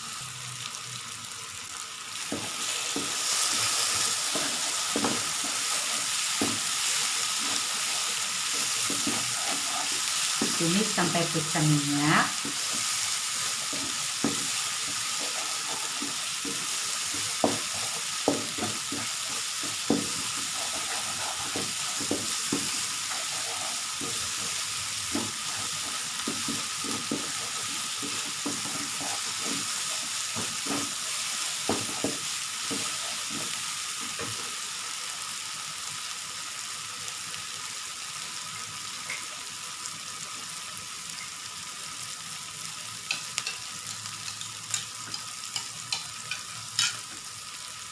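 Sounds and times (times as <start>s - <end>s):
paste sizzling in oil: 0.0s - 47.9s
spoon knocking and scraping pan: 2.3s - 34.6s, 43.1s - 47.3s.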